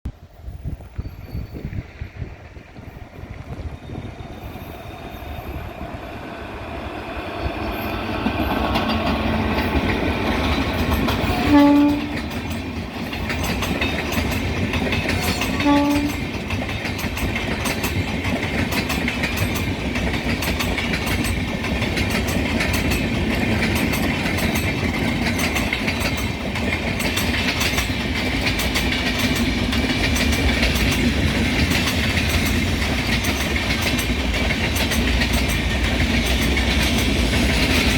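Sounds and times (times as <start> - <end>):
train passing rush: 0.0 - 37.9
wheels clacking over rail joints: 1.0 - 37.9
train horn blasts: 11.2 - 12.4, 15.2 - 16.3.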